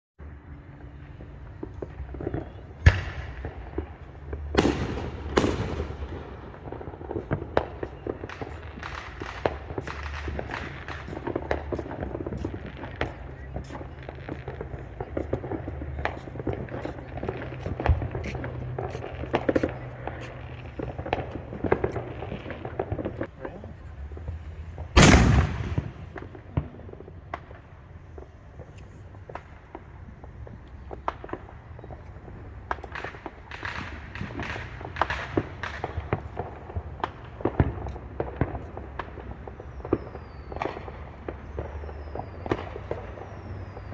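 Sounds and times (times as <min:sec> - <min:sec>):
low steady rumble: 0:00.2 - 0:37.4
firecracker pops and crackles: 0:01.1 - 0:43.9
echoing firework booms: 0:01.4 - 0:23.3, 0:25.0 - 0:26.7
firework bang: 0:01.5 - 0:23.3, 0:25.0 - 0:27.6.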